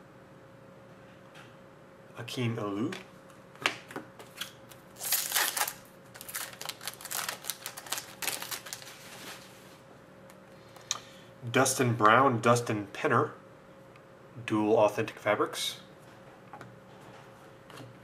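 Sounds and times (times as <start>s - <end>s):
cards rustling: 4.2s - 9.5s.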